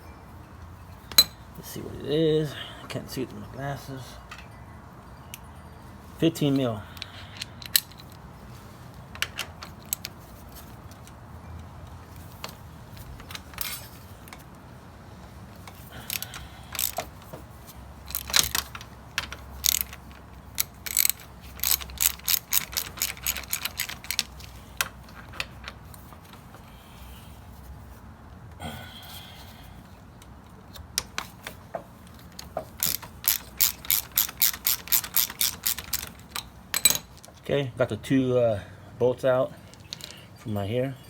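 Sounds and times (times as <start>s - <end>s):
ratchet wrench clicking: 6.5s - 8.2s, 15.7s - 25.5s, 31.0s - 37.4s.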